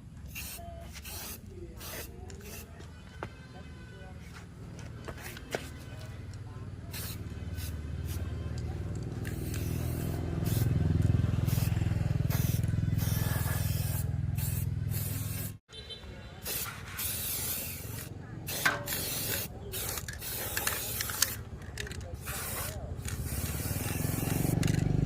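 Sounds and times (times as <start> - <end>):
bursts of hissing: 16.4 - 21.4, 22.2 - 24.6.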